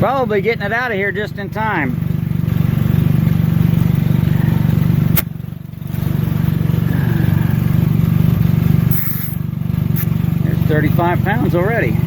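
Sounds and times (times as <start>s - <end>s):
air compressor chugging: 1.6s - 12.0s
sharp click: 5.1s - 5.3s.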